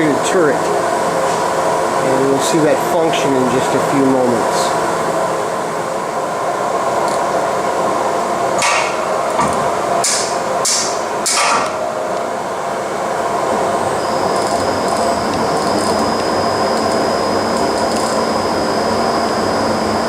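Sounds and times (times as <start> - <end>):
lathe humming: 0.0 - 20.0
steady high whine: 0.0 - 20.0.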